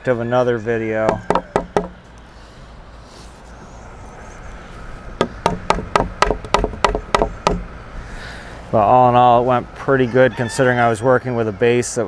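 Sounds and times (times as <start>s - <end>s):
hammer striking wood: 1.1s - 2.0s, 5.2s - 7.7s.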